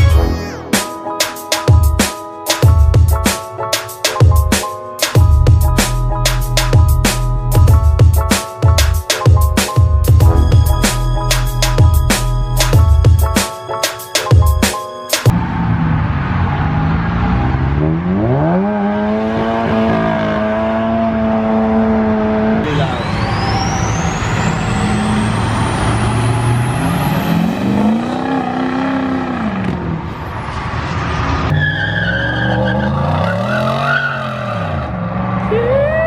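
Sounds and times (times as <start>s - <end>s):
car engine revving: 15.3s - 35.5s.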